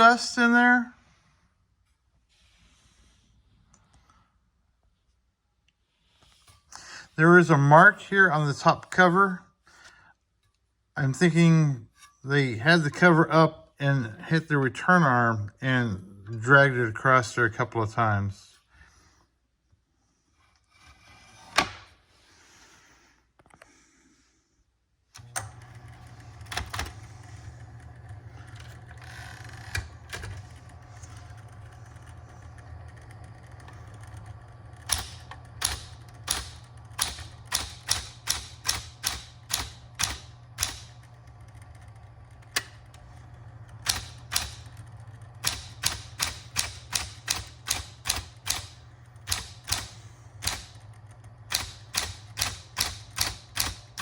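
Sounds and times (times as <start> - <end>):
typewriter motor humming: 25.2 - 54.0
typewriter keys striking: 34.9 - 41.1, 43.8 - 44.8, 45.4 - 50.9, 51.5 - 54.0.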